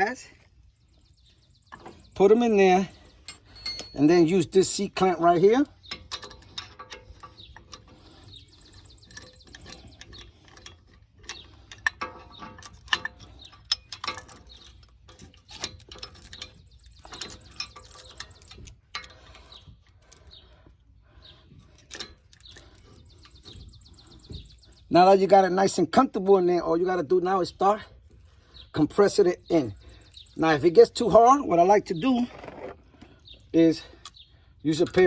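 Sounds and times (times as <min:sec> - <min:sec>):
metallic clicks and clinks: 0:03.2 - 0:19.6.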